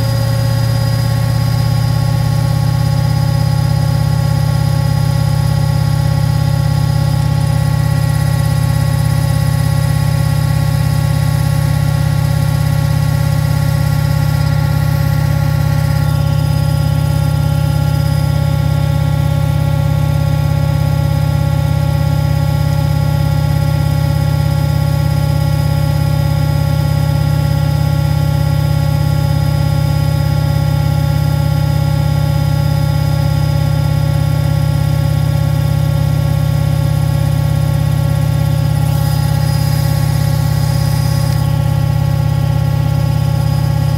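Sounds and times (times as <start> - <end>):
washing machine spinning: 0.0 - 43.9
motor whine: 38.2 - 43.9.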